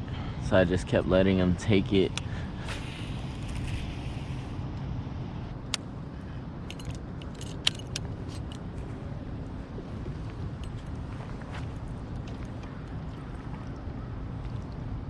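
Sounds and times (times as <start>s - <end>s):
light metallic clinks: 6.6s - 9.2s, 10.2s - 11.2s.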